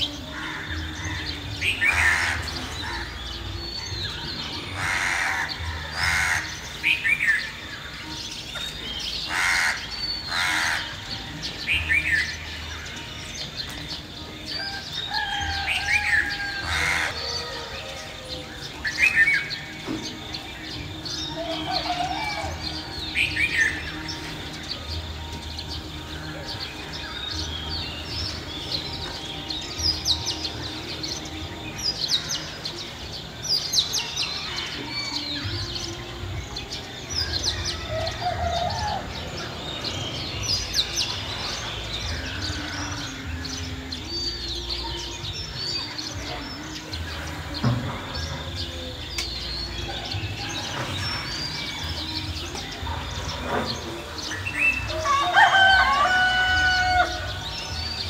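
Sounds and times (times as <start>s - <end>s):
small birds chirping: 0.0s - 58.0s
rooster crowing: 14.6s - 18.0s, 54.9s - 57.6s.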